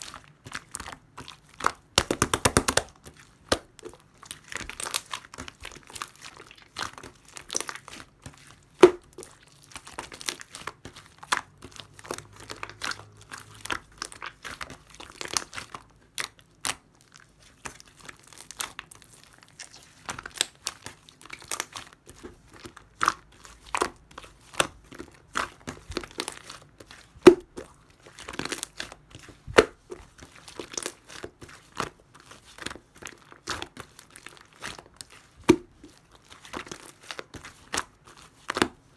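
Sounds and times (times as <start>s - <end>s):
slime squishing by hand: 0.0s - 38.9s
slime snapping: 2.0s - 2.9s.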